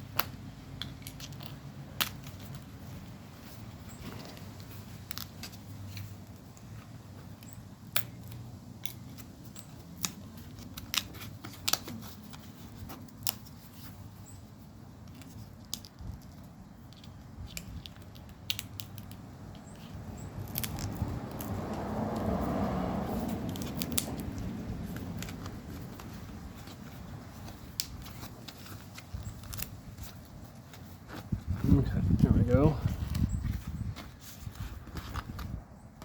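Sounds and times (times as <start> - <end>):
cover peeling clicks and snaps: 0.1 - 3.0, 4.0 - 6.7, 7.4 - 13.9, 15.0 - 22.3, 23.1 - 31.3.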